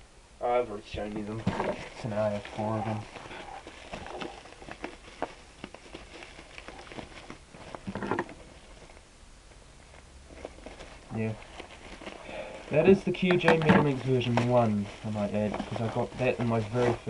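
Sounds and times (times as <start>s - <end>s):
plastic packaging rustling: 1.0s - 9.0s, 9.8s - 17.0s.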